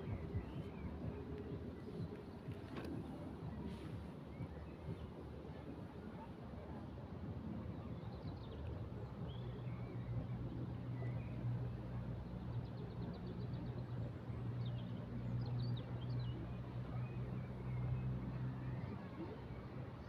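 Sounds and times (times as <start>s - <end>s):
small songbirds chirping: 0.0s - 3.6s.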